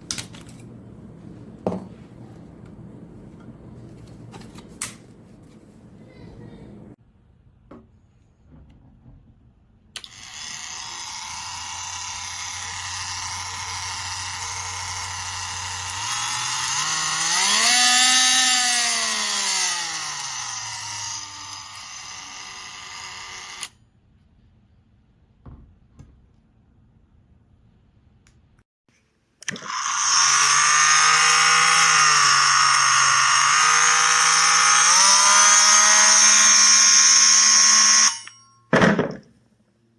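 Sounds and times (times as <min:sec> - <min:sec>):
oscillating multi-tool whine: 0:10.0 - 0:23.8, 0:29.5 - 0:38.6.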